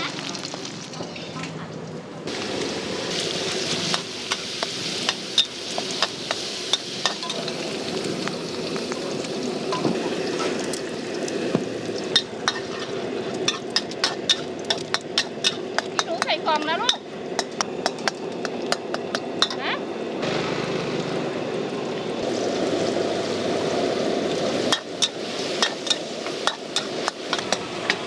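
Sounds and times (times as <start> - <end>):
food sizzling in a pan: 0.0 - 1.6, 2.3 - 20.8, 22.2 - 28.0
metal spatula clacking on pan: 13.5 - 19.6.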